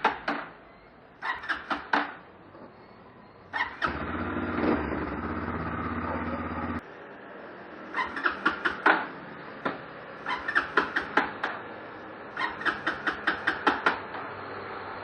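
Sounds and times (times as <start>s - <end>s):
starter clutch chattering and squealing: 0.8s - 6.8s, 7.9s - 9.0s, 10.2s - 11.6s, 12.3s - 14.1s.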